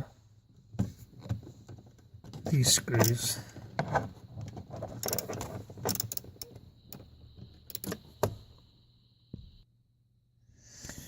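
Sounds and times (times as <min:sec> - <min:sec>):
ratchet clicking: 0:05.0 - 0:08.0.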